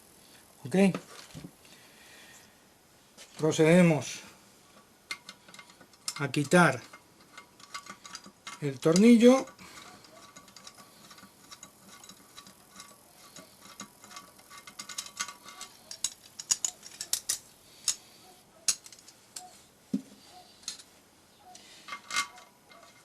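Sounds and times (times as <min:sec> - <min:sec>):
metallic clicks of hand tool: 0:05.1 - 0:18.0.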